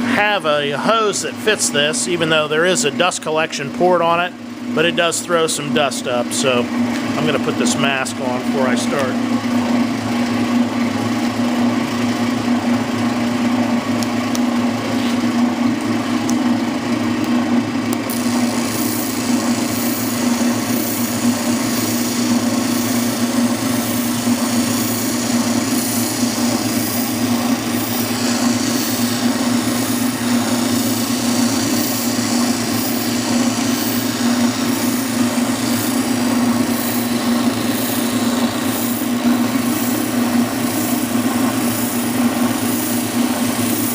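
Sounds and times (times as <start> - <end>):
spindle sander humming: 0.0 - 43.9
sandpaper hissing on wood: 18.1 - 43.9.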